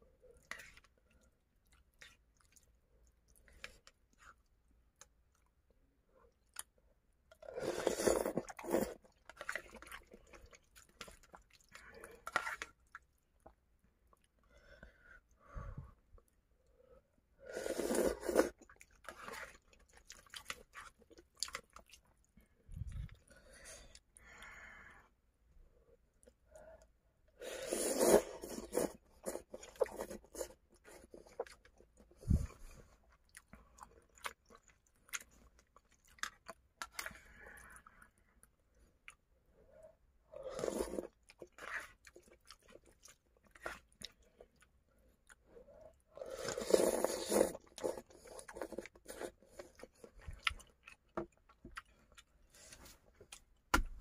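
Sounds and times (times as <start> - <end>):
person chewing crunchy food: 17.6 - 24.0, 27.6 - 38.1, 40.4 - 53.8.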